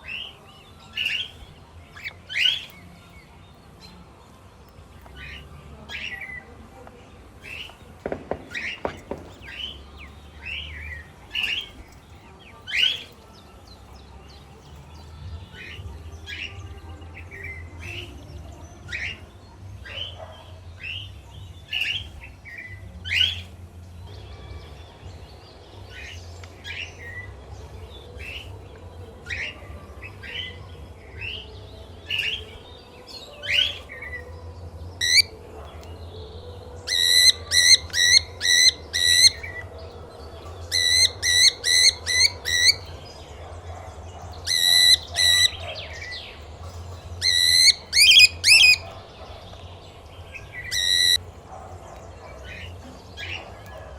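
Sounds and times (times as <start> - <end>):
parrots chirping: 7.4 - 13.2, 35.0 - 35.7, 36.8 - 53.9.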